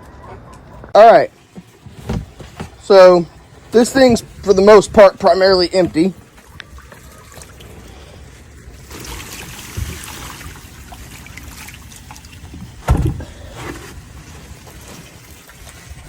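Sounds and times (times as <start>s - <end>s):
water sloshing in a container: 1.3s - 16.0s
loud thump: 12.8s - 13.4s.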